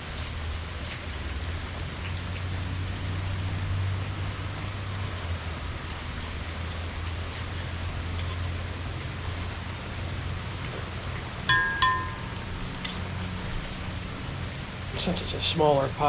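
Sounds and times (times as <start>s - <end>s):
steady rainfall: 0.0s - 16.0s
drops ticking: 11.4s - 12.9s.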